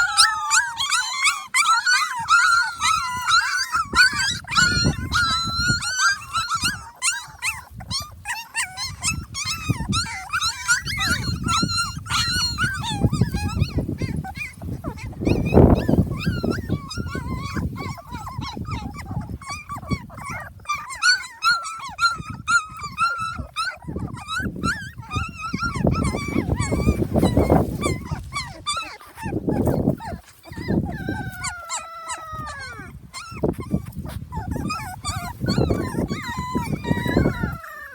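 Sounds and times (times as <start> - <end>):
puppies whimpering and squealing: 0.0 - 37.9
low rumbling and shuffling: 22.3 - 37.7.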